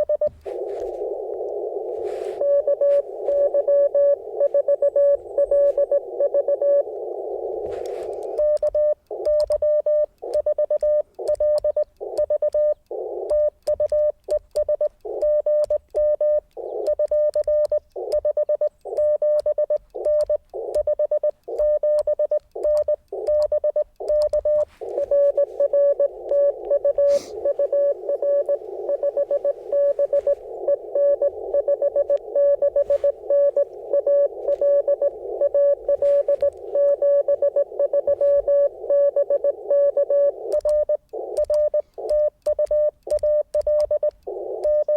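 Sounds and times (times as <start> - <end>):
radio band hiss: 0.0 - 8.5, 12.8 - 13.4, 16.6 - 17.0, 18.0 - 18.2, 20.0 - 20.8, 24.0 - 40.5, 41.1 - 42.1, 44.2 - 44.9
morse code tone: 0.0 - 44.9.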